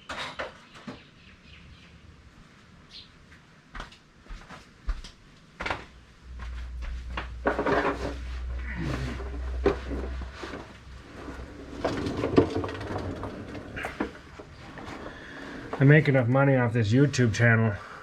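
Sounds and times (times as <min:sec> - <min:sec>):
tools knocking and clattering: 0:00.0 - 0:01.0, 0:07.3 - 0:08.2
low steady hum: 0:05.6 - 0:18.0.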